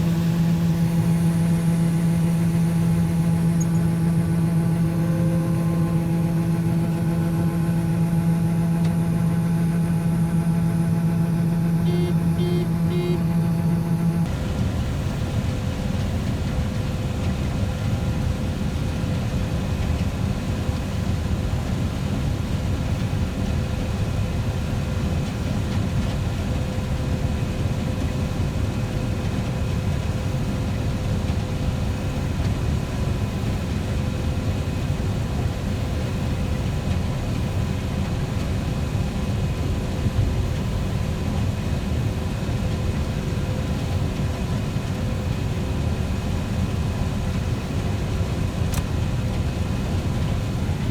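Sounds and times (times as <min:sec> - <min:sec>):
faint whining tones: 0:00.0 - 0:14.3
low engine drone: 0:00.0 - 0:21.8.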